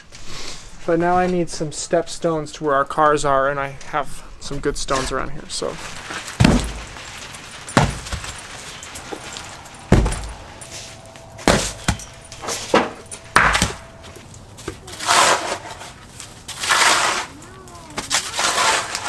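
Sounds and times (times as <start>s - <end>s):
stones thudding and knocking: 5.8s - 15.2s.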